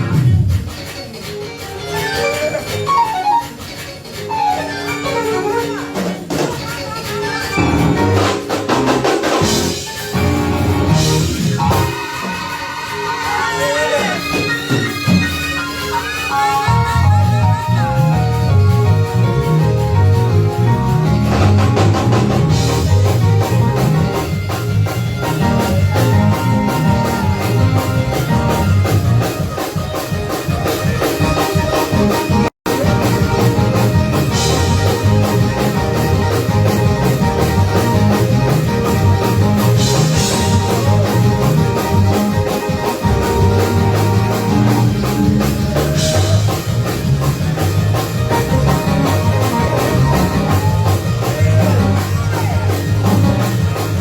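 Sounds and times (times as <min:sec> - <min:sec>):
church band playing gospel: 0:00.0 - 0:54.0
drum kit: 0:00.0 - 0:54.0
guitar: 0:00.0 - 0:54.0.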